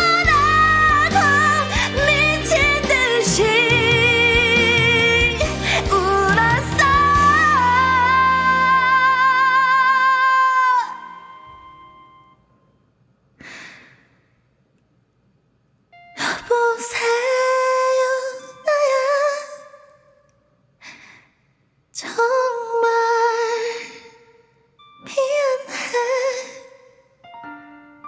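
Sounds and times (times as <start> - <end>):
woman breathing: 13.4 - 14.4.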